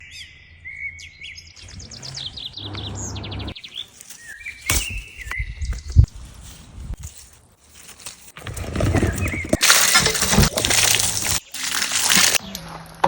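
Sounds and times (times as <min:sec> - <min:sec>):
songbirds chirping and trilling: 0:00.0 - 0:06.9, 0:08.4 - 0:09.6.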